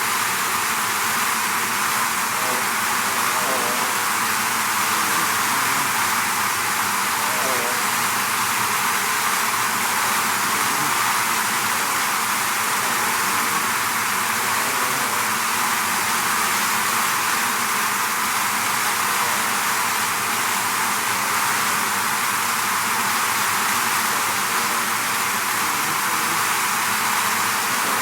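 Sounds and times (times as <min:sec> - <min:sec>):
bee swarm buzzing: 0:00.0 - 0:28.0.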